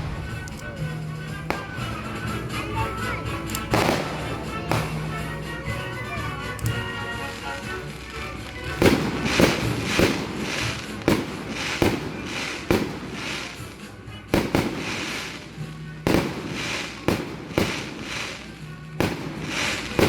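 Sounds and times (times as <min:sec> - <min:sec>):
fireworks shells bursting: 0:00.0 - 0:05.2, 0:06.5 - 0:20.0
faint orchestral music: 0:00.0 - 0:20.0
crackling hiss: 0:06.6 - 0:20.0.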